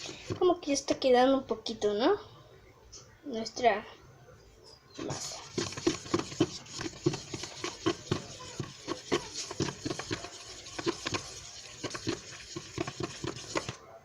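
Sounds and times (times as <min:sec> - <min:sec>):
dough squelching while stirred: 0:00.0 - 0:00.6, 0:05.0 - 0:14.0.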